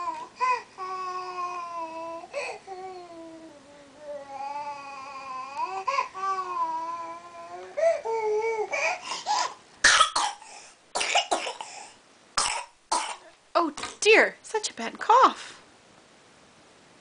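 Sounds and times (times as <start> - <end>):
loud sharp coughs: 9.3 - 10.4, 11.0 - 11.8, 12.4 - 13.3.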